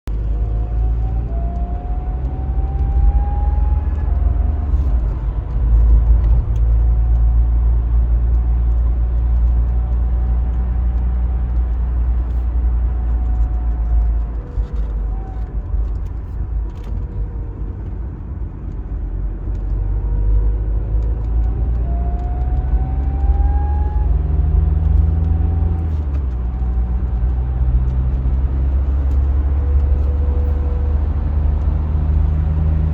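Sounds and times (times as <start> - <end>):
diesel engine accelerating: 0.1 - 32.9.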